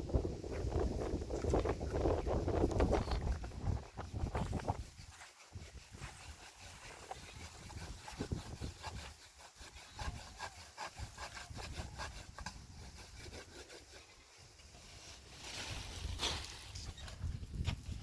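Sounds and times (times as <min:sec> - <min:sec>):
rustle: 0:00.1 - 0:18.0
short rasping scrapes: 0:02.9 - 0:14.2.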